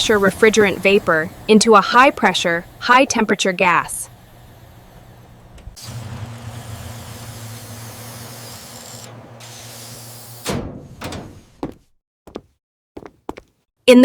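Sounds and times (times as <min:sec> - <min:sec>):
hiss of gas: 0:00.0 - 0:10.6
refrigerator compressor humming: 0:00.0 - 0:11.8.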